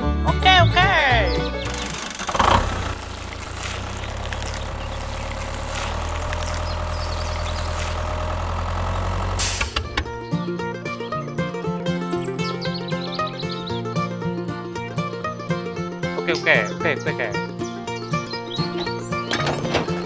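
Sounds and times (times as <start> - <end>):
music: 0.0 - 2.0, 9.8 - 20.0
heavy truck engine idling: 0.0 - 10.4, 16.3 - 20.0
short hiss: 1.7 - 10.0.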